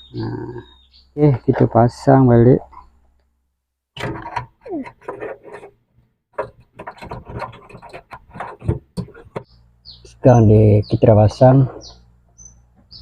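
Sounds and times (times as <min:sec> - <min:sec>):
knocks and clicks of parts: 0:04.0 - 0:05.7, 0:06.3 - 0:09.6
parts rubbing and scraping: 0:04.0 - 0:10.4.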